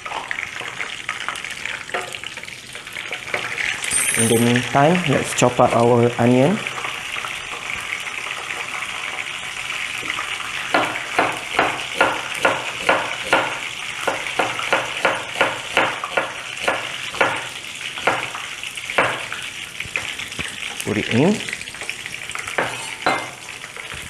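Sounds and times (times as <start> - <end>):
spices sizzling in oil: 0.0 - 24.0
knife chopping onion on board: 10.7 - 19.3.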